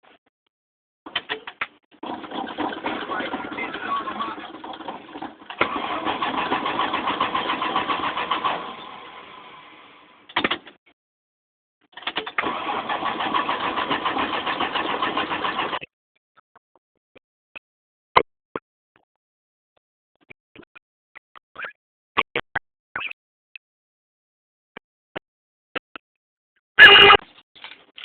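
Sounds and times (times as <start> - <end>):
engine starter cranking: 1.1 - 9.4, 12.0 - 15.8.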